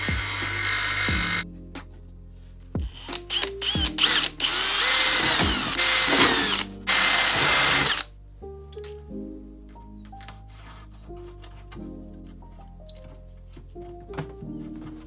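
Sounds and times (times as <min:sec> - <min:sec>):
electric drill motor whine: 0:00.0 - 0:01.4, 0:02.9 - 0:08.0.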